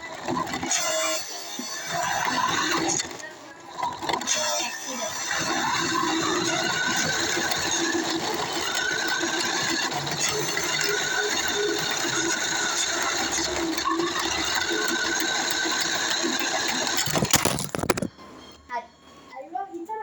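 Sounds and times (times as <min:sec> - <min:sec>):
electric motor and gears whirring: 0:00.0 - 0:18.2.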